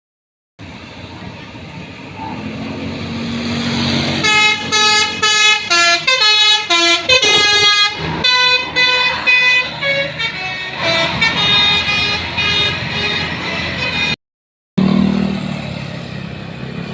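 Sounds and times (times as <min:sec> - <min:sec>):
bus approaching: 0:00.6 - 0:14.2, 0:14.8 - 0:16.9
bus musical horn tune: 0:04.1 - 0:14.2.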